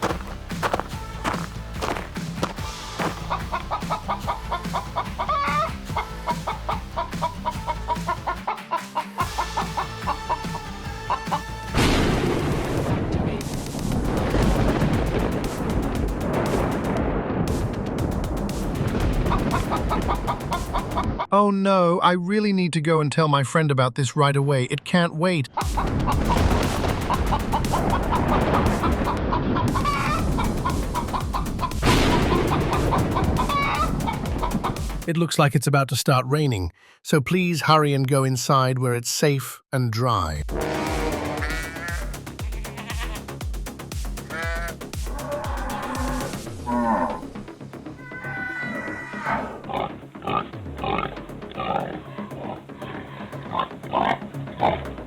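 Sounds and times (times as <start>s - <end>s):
hens clucking: 0.0s - 11.6s, 19.3s - 21.3s, 25.5s - 26.4s, 27.0s - 35.0s, 44.2s - 47.2s
background music: 0.0s - 22.9s, 24.2s - 35.4s, 40.2s - 55.0s
hen squawk: 3.1s - 11.5s, 27.9s - 34.8s, 40.6s - 43.3s, 44.2s - 47.2s, 48.0s - 54.8s
loud rushing noise: 40.5s - 41.6s.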